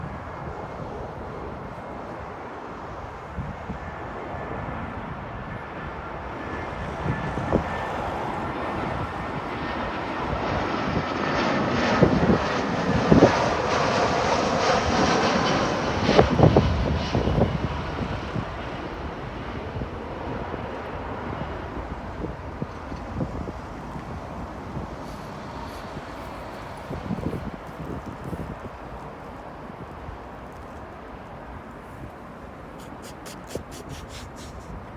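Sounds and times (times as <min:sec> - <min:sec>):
engine passing by: 0:06.3 - 0:17.4, 0:18.0 - 0:30.3.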